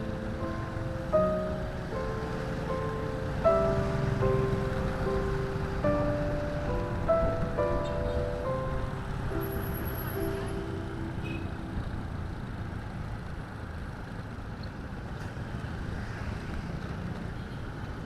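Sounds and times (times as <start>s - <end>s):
rushing wind: 0.0s - 12.6s
engine and tyre rumble: 0.0s - 18.0s.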